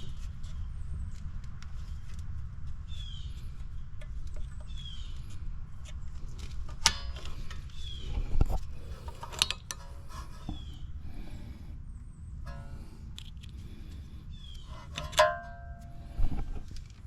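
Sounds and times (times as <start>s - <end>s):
bird chirping: 2.9s - 5.4s, 7.7s - 8.3s, 14.3s - 14.9s
hand tools clinking on metal: 14.8s - 16.0s.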